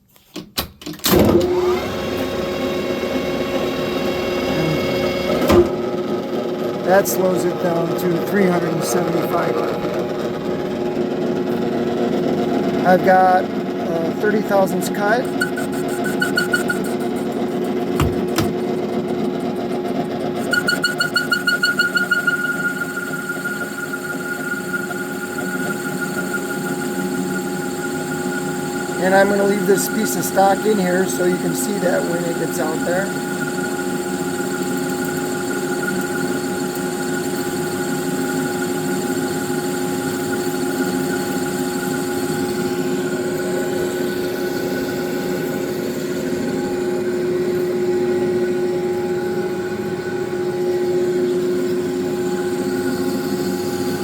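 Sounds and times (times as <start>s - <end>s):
metal lathe motor whine: 1.2s - 54.0s
pulsing ringing tone: 15.1s - 17.3s, 20.3s - 54.0s.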